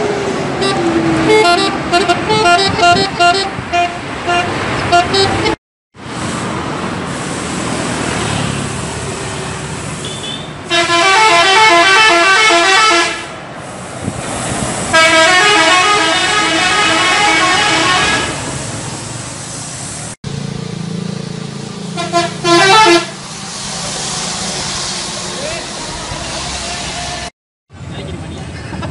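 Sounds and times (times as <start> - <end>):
bus musical air horn: 0.6 - 5.6, 10.0 - 13.4, 14.9 - 18.5, 21.9 - 23.2.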